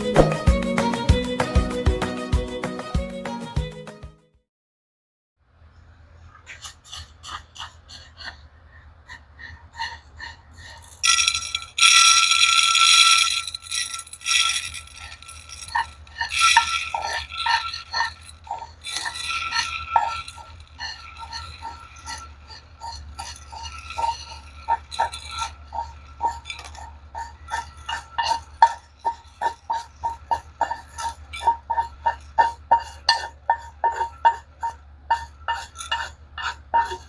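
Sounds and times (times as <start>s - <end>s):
rice grains rattling on a dish: 10.8s - 37.0s.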